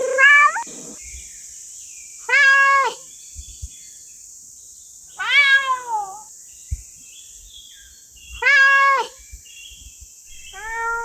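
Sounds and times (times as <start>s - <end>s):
cat meowing: 0.0s - 0.7s, 5.2s - 6.2s, 8.4s - 9.1s, 10.4s - 11.0s.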